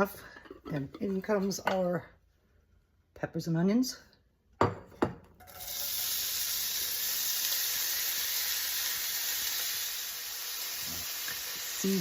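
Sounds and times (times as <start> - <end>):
vegetables sizzling in oil: 5.4 - 12.0.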